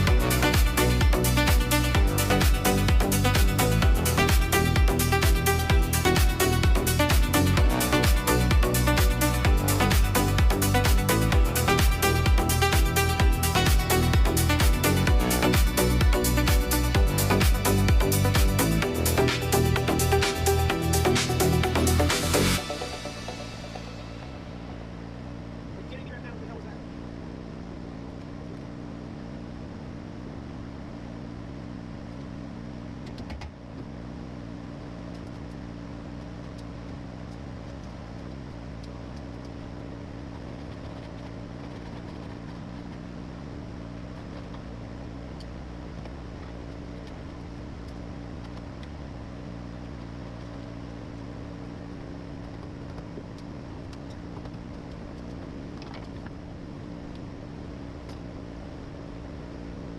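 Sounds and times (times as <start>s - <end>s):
steady machine hum: 0.0s - 33.0s.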